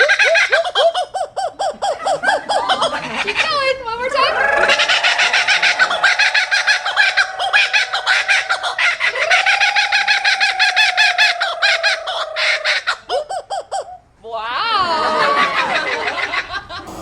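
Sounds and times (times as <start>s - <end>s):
kookaburra cackling call: 4.5s - 13.9s.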